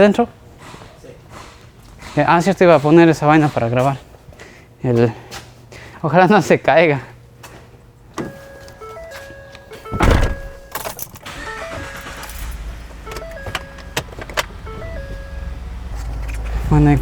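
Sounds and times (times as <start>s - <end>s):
loud thump: 10.0s - 10.6s.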